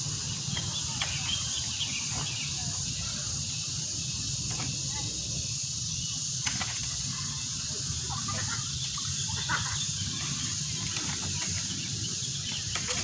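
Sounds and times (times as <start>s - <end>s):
faint distant voices: 0.0s - 13.0s
high-pitched insect chorus: 0.0s - 13.0s.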